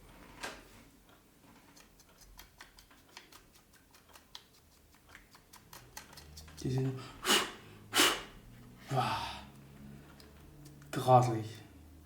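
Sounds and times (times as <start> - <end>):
small objects clicking: 1.8 - 6.7.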